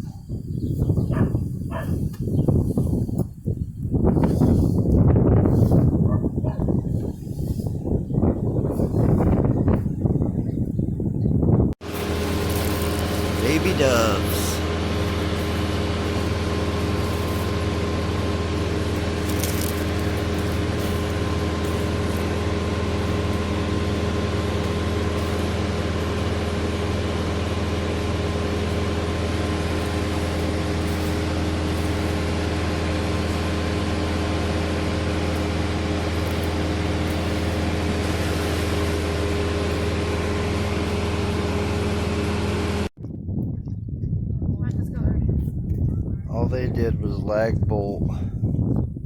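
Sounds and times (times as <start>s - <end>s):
large engine humming: 11.6s - 42.9s.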